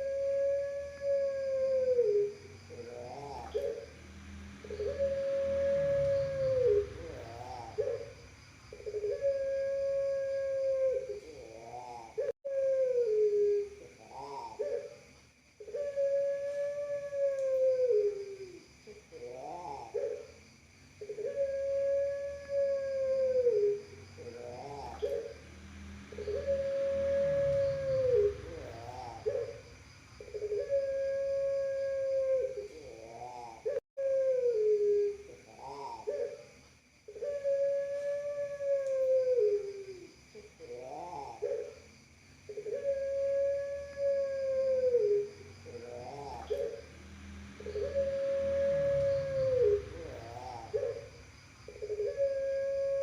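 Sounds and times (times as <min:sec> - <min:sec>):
dove cooing: 0:00.0 - 0:15.0, 0:15.6 - 0:20.4, 0:21.0 - 0:36.5, 0:37.1 - 0:41.8, 0:42.5 - 0:53.0.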